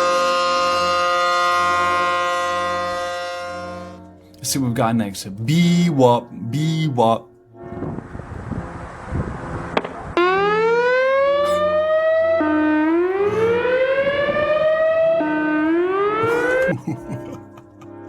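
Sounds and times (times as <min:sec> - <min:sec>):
siren whooping: 0:10.2 - 0:16.8.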